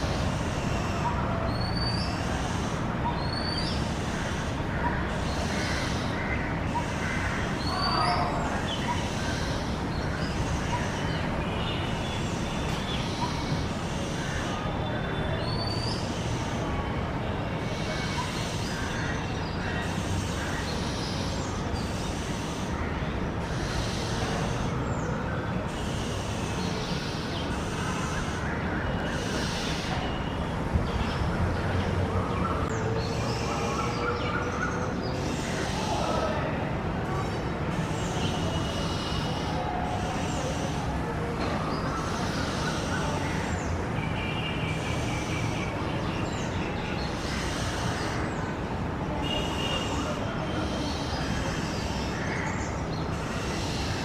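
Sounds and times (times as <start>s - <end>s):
steady background noise: 0.0s - 54.0s
softer lower bird calls: 17.4s - 30.4s, 37.2s - 40.9s.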